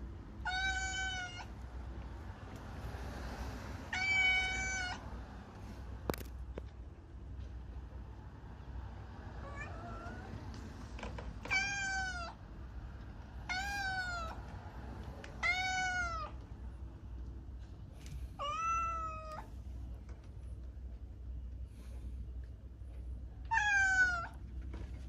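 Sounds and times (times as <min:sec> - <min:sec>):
cat meowing: 0:00.4 - 0:01.6, 0:03.9 - 0:05.0, 0:09.4 - 0:10.4, 0:11.4 - 0:12.4, 0:13.4 - 0:14.4, 0:15.4 - 0:16.4, 0:18.4 - 0:19.5, 0:23.4 - 0:24.4.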